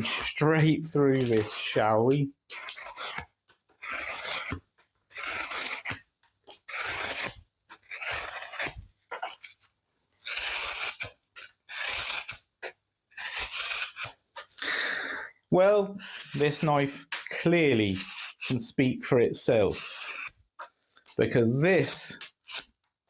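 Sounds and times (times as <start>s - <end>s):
knife slicing through cardboard: 0.0s - 1.8s, 2.5s - 9.6s, 10.2s - 12.5s, 13.2s - 14.5s, 16.0s - 18.8s, 19.5s - 20.4s, 21.2s - 22.7s.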